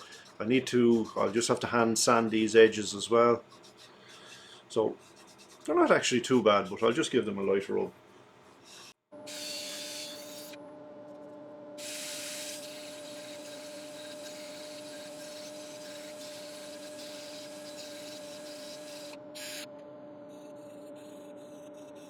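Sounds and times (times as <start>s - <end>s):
sandpaper hissing on wood: 0.0s - 7.2s, 11.8s - 19.7s
wood lathe humming: 0.0s - 7.9s, 9.3s - 10.7s, 11.8s - 19.7s.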